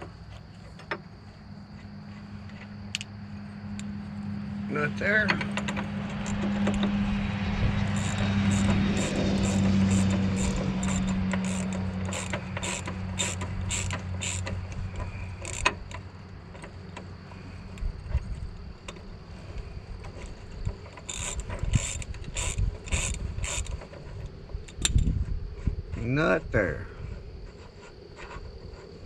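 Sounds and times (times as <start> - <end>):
ratchet wrench clicking: 5.2 - 16.0, 20.2 - 23.9.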